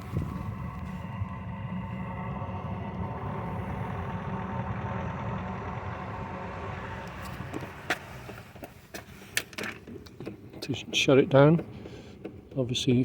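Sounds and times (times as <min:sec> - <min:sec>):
diesel heater rumbling: 0:00.0 - 0:13.0
sharp clicks and knocks: 0:07.1 - 0:12.8.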